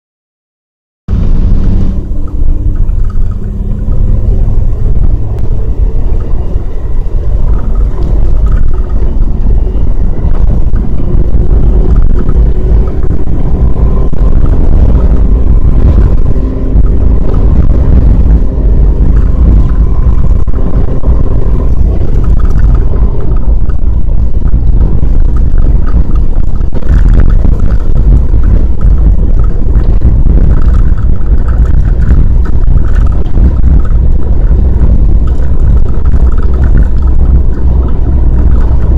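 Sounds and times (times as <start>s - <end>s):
vehicle engine running: 1.1s - 38.9s
wind buffeting microphone: 1.1s - 38.9s.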